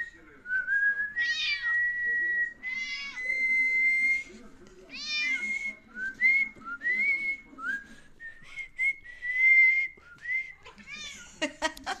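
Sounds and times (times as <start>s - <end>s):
cat meowing: 1.2s - 1.8s, 2.7s - 3.4s, 4.9s - 5.4s.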